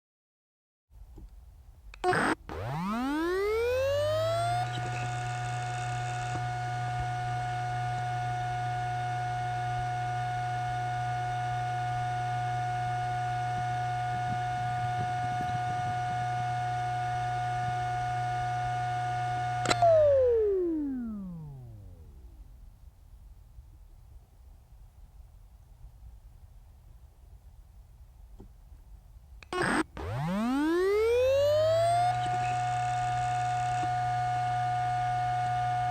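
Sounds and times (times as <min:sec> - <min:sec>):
low hum: 0:01.9 - 0:22.9, 0:29.4 - 0:35.9
hard drive whining: 0:02.0 - 0:22.4, 0:29.4 - 0:35.9.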